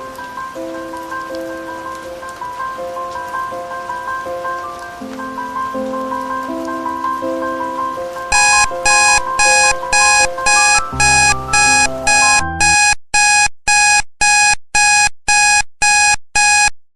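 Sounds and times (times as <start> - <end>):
soft melodic music: 0.0 - 12.8
electronic alarm beeping: 8.3 - 16.8.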